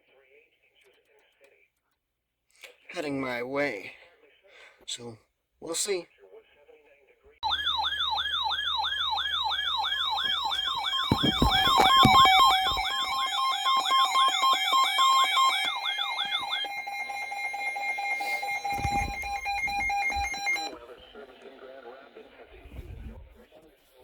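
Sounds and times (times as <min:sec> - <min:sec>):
warbling electronic siren alert: 0:07.4 - 0:20.8.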